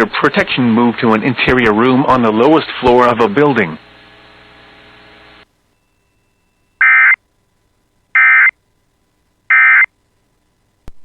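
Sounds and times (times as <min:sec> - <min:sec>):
faint hum: 0:00.0 - 0:11.0
digital data tone bursts: 0:06.8 - 0:07.2, 0:08.2 - 0:08.5, 0:09.5 - 0:09.9.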